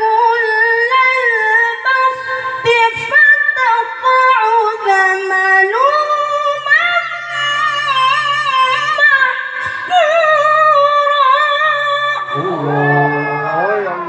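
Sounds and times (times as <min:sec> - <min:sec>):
low man's voice: 0:12.3 - 0:14.0
man reciting melodically: 0:12.3 - 0:14.0.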